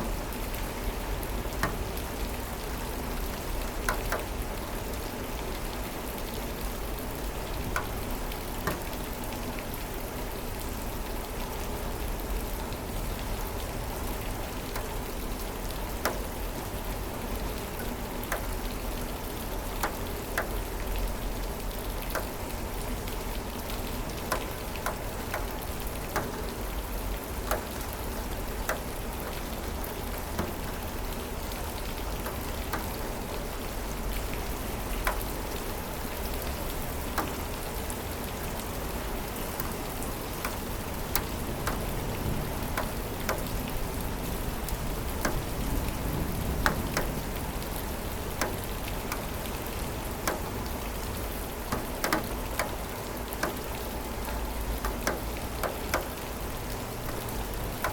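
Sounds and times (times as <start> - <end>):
steady rainfall hiss: 0.0 - 57.9
close raindrops landing sharply: 12.7 - 57.9.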